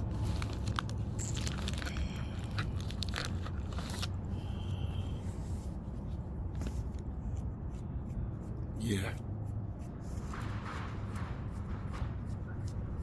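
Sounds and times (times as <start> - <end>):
small objects clicking and scraping: 0.2 - 4.2.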